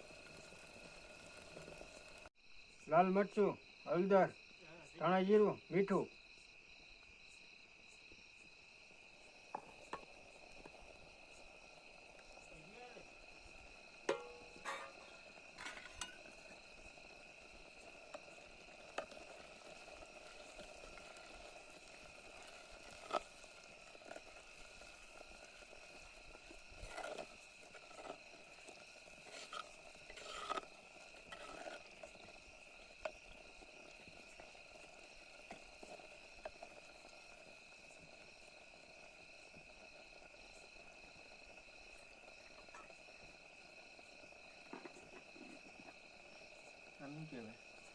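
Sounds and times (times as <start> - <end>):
crickets chirring: 0.0 - 47.9
utensil stirring in cooking pan: 13.1 - 38.3.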